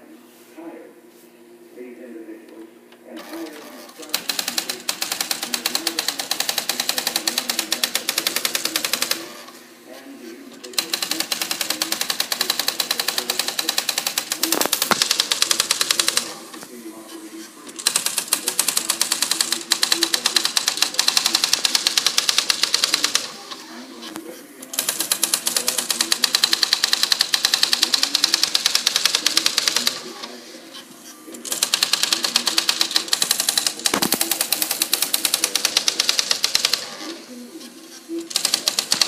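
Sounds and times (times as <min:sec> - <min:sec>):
typewriter clicking rapidly: 0:03.2 - 0:09.4, 0:10.7 - 0:16.4, 0:17.7 - 0:23.5, 0:24.7 - 0:30.2, 0:31.4 - 0:37.1, 0:38.2 - 0:39.0.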